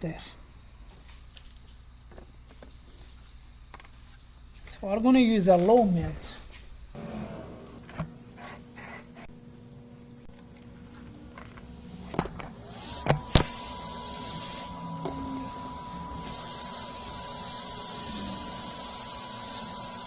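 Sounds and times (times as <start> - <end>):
hot air station whine: 7.0 - 20.0
sharp clicks: 11.3 - 16.9.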